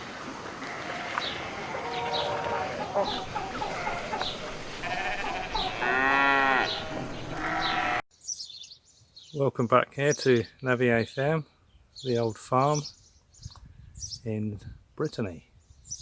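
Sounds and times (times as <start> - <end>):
wavering bleat: 0.7 - 8.0.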